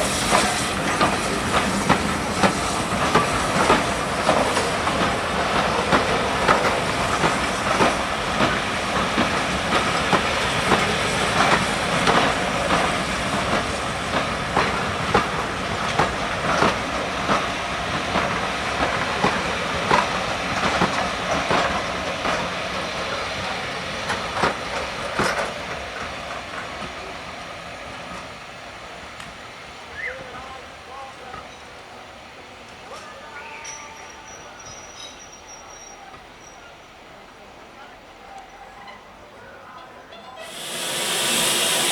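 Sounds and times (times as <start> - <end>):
train wheels clicking over rail joints: 0.0 - 27.1.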